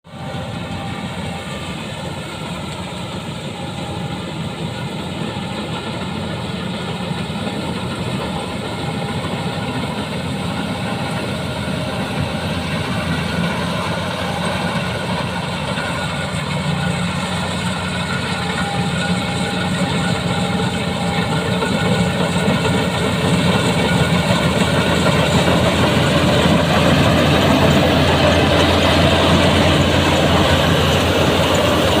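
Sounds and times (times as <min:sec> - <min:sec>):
combine harvester running: 0:00.1 - 0:32.0.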